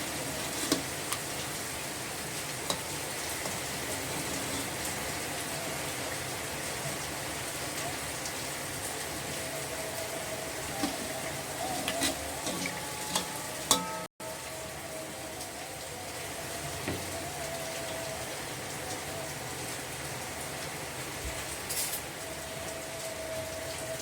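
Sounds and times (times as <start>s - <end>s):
food sizzling in a frying pan: 0.0s - 16.0s
utensil clinking against pan: 11.8s - 14.1s.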